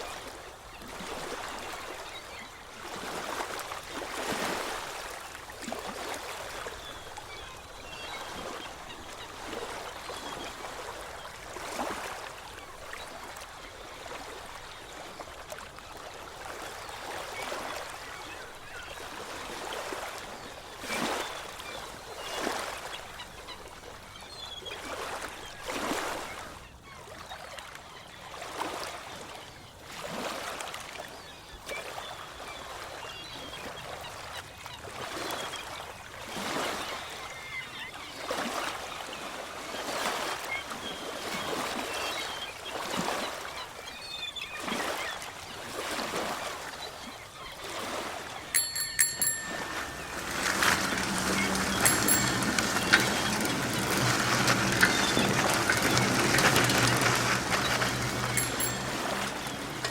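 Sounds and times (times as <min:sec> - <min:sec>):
sea waves washing in: 0:47.8 - 0:59.9.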